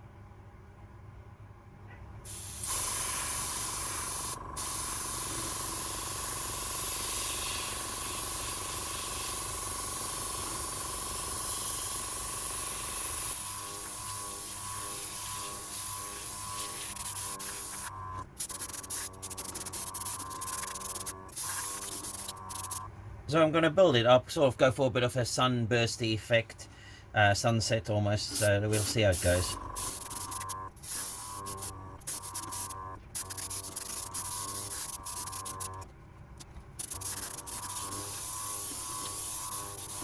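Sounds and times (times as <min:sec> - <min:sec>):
airbrush spraying hiss: 0:02.3 - 0:22.8, 0:28.3 - 0:35.8, 0:36.8 - 0:40.0
steady thin tone: 0:28.3 - 0:35.9.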